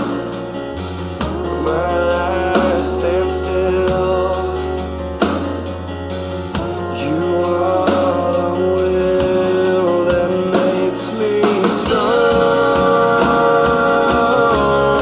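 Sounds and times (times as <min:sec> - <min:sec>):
guitar-led pop-rock instrumental: 0:00.0 - 0:15.0.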